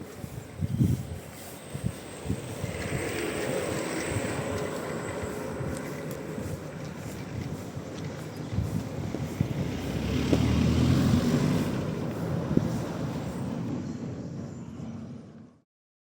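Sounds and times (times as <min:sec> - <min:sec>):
rally car passing by: 0:01.4 - 0:13.7.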